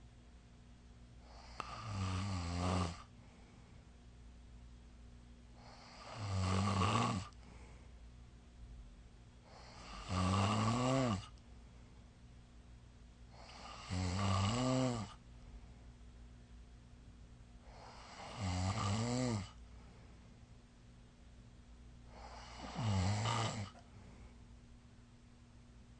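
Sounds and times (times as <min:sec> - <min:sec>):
person snoring: 0:01.3 - 0:03.1, 0:05.7 - 0:07.4, 0:09.5 - 0:11.4, 0:13.4 - 0:15.2, 0:17.7 - 0:19.6, 0:22.1 - 0:23.8.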